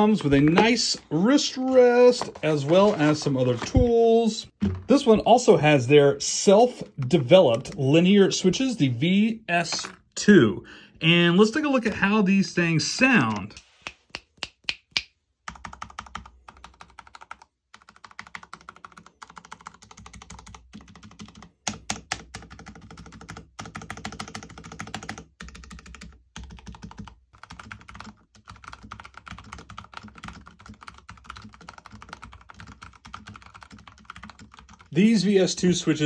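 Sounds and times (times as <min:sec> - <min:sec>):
fast typing on mechanical keyboard: 0:15.5 - 0:34.9.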